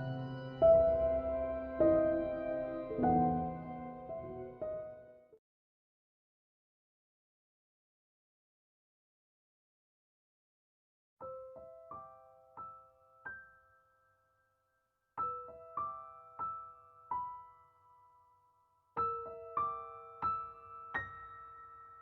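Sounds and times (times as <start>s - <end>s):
soft piano music: 0.0s - 5.4s, 11.2s - 14.2s, 15.2s - 22.0s.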